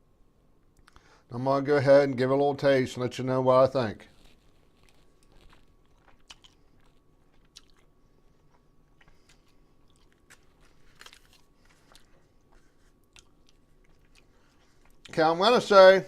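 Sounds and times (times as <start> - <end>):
person chewing with mouth clicks: 4.1 - 15.1.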